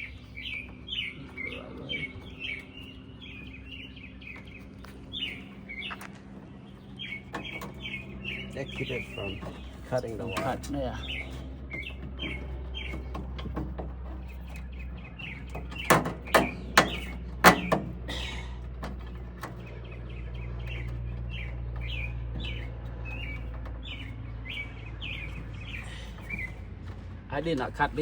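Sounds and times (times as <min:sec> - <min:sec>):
small birds chirping: 0:00.0 - 0:28.0
steady low hum: 0:00.0 - 0:28.0.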